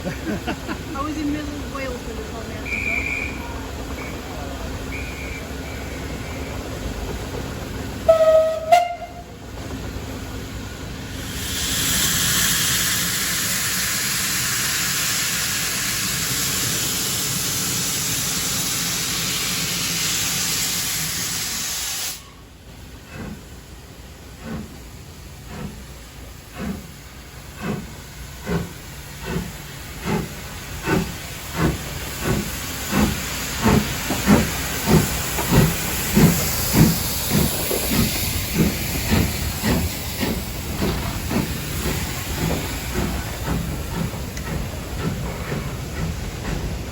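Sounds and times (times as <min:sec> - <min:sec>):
steam locomotive chuffing: 0:00.0 - 0:46.9
steam hissing: 0:09.5 - 0:46.9.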